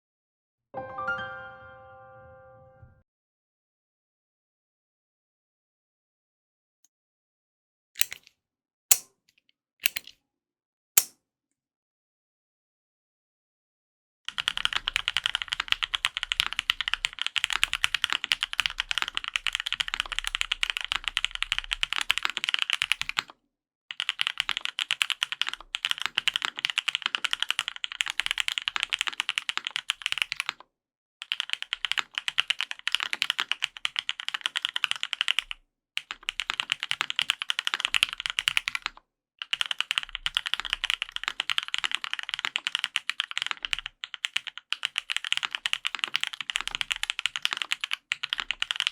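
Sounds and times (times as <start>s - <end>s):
fast mechanical keyboard typing: 14.3s - 23.3s, 23.9s - 30.6s, 31.2s - 48.9s.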